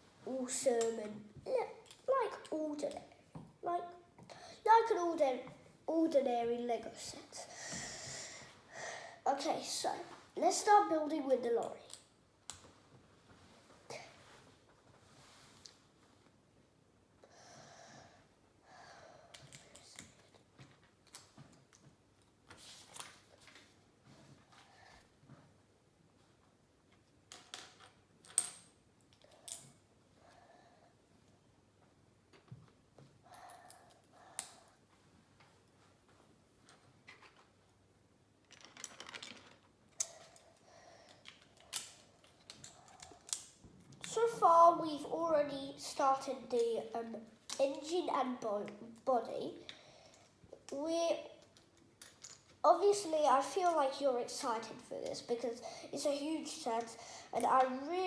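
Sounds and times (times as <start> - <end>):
soft breaths through the nose: 7.4 - 9.2, 56.9 - 57.4
plastic bricks clicking and rattling: 38.5 - 39.7
lego pieces rustling: 38.5 - 40.5.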